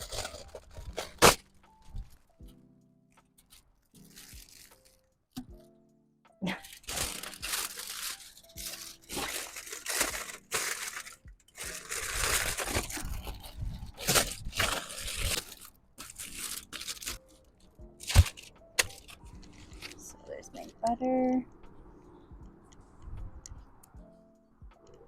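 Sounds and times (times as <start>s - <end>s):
packaging crinkling and tearing: 0.0s - 1.4s, 3.5s - 5.1s, 6.5s - 17.4s, 18.0s - 20.0s.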